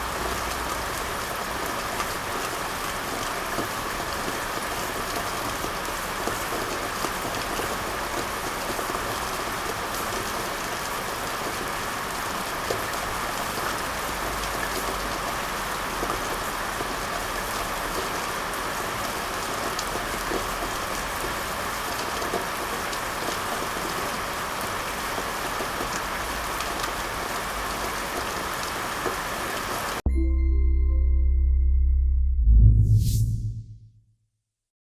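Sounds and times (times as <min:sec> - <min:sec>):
steady rain falling: 0:00.0 - 0:30.0
music: 0:30.0 - 0:34.0.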